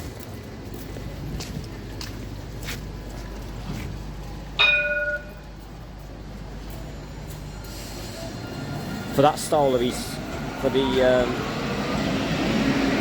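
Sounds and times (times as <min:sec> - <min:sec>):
bell-like ding: 0:04.6 - 0:05.4.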